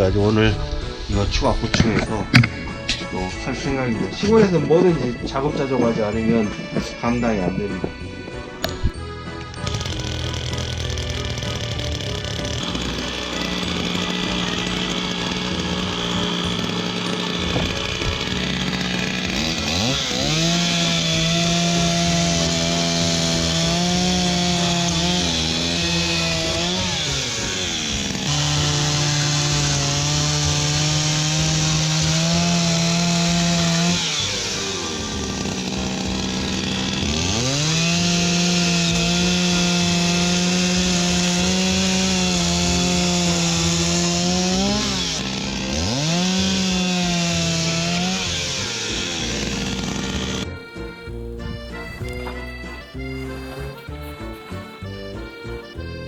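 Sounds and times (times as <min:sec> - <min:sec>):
chainsaw running at high revs: 0:09.4 - 0:53.8.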